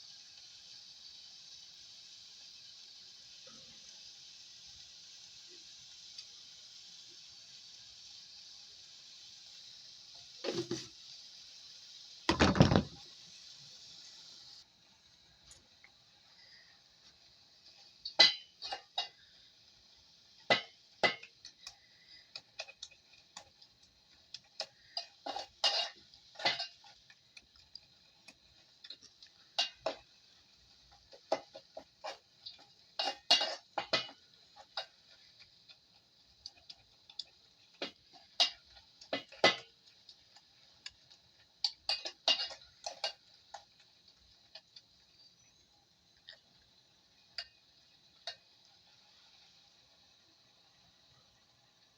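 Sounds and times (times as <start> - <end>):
faint high hiss: 0.0 - 51.9
metal spoon clinking against pot: 41.8 - 43.2.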